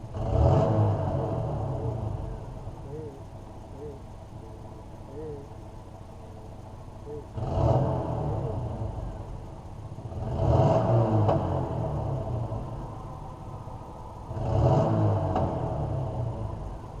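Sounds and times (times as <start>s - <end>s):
car engine revving: 0.0s - 17.0s
short hoot-like calls: 2.8s - 5.6s.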